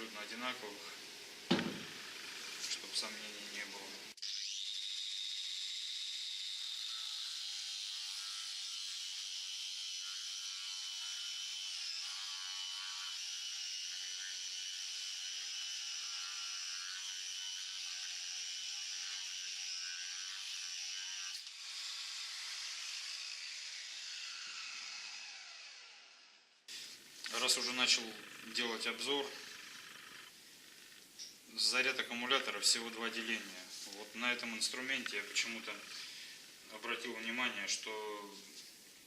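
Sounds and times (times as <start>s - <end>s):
angle grinder cutting steel: 1.5s - 26.4s.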